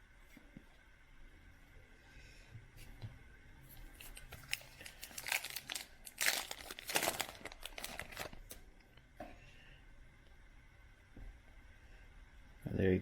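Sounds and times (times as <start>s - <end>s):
plastic wrapper crinkling: 3.9s - 8.6s.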